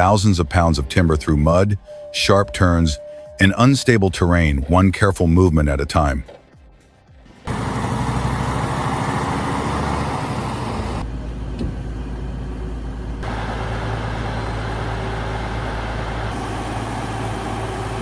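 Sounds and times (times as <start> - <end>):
diesel truck engine running: 6.1 - 18.0.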